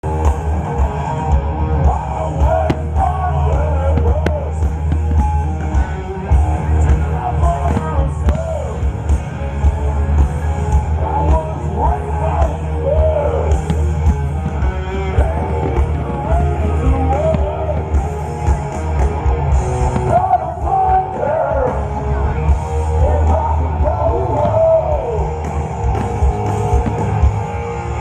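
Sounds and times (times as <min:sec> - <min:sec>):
heavy bass: 0:00.0 - 0:28.0
rock guitar: 0:00.0 - 0:28.0.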